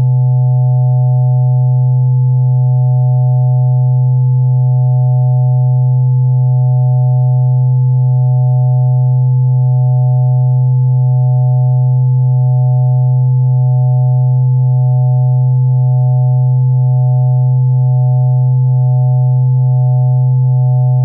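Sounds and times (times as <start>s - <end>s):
synthesized low hum: 0.0s - 21.0s.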